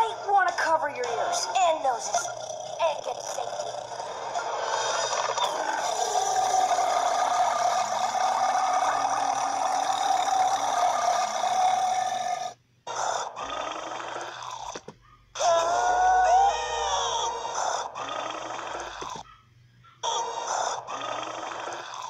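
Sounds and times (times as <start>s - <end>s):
long raspy burp: 2.1s - 12.6s, 13.4s - 14.8s, 17.6s - 19.2s, 20.0s - 22.0s.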